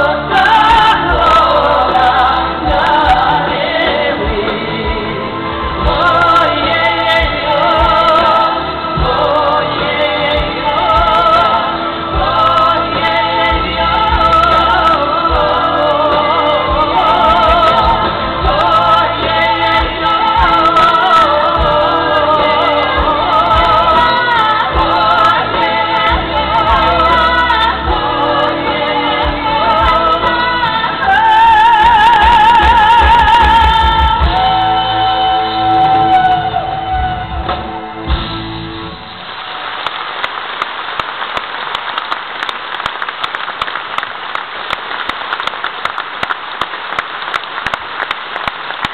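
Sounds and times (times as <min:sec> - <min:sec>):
woman singing with band: 0:00.0 - 0:37.6
backing singers: 0:00.0 - 0:38.2
audience applause: 0:39.0 - 0:48.9.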